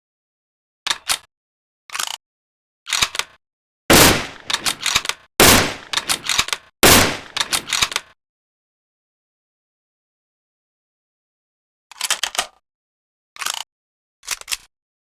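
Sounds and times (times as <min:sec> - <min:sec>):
rifle shots: 0:03.9 - 0:07.9
rifle mechanical clicks: 0:03.9 - 0:08.0.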